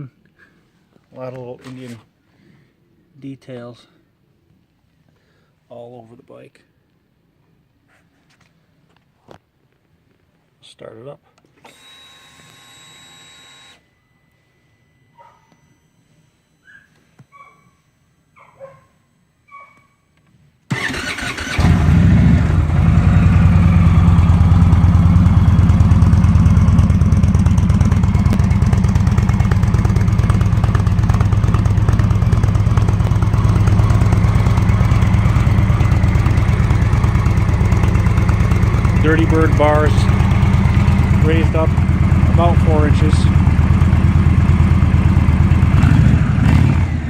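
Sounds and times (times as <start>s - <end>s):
motorcycle engine starting and idling: 20.7s - 47.0s.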